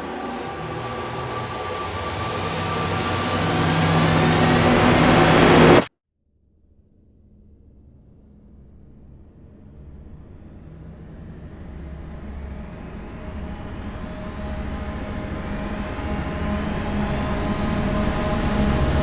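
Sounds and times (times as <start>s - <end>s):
low rumbling drone: 0.0s - 5.9s.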